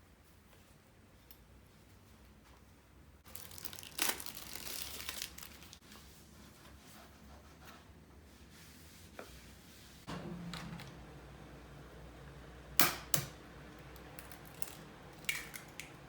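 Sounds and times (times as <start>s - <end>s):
packaging tearing and crinkling: 3.3s - 5.8s.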